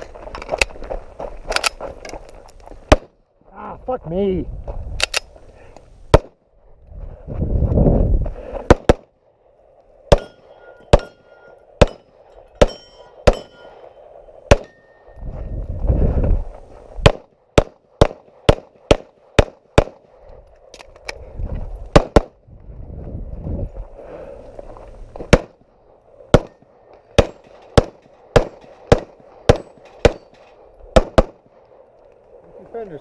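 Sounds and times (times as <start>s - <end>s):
low rumbling microphone noise: 0.0s - 8.7s, 15.1s - 17.1s, 21.1s - 26.4s
pistol shots: 2.9s - 3.1s, 8.7s - 9.1s, 10.1s - 11.2s, 11.8s - 12.0s, 12.6s - 13.6s, 14.5s - 14.8s, 17.0s - 20.0s, 21.9s - 22.4s, 25.3s - 25.6s, 26.3s - 26.6s, 27.2s - 31.5s
steel plates ringing: 10.1s - 14.0s, 14.6s - 15.2s.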